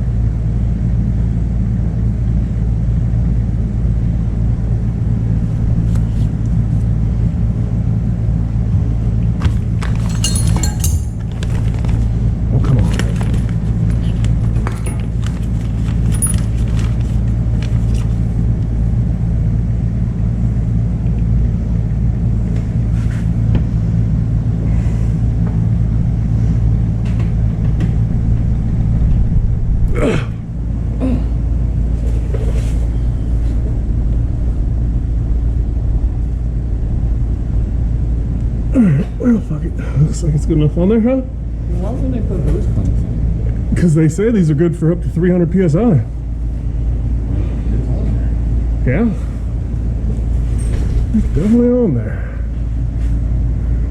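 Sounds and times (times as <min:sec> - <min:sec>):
fan humming: 0:03.4 - 0:53.9
loud metal clank: 0:09.4 - 0:11.9
metallic clinks of tools: 0:09.8 - 0:12.0.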